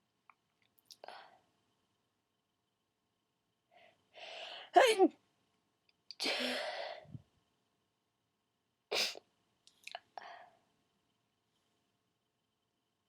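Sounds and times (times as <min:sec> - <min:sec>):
person sneezing: 0:08.9 - 0:09.2.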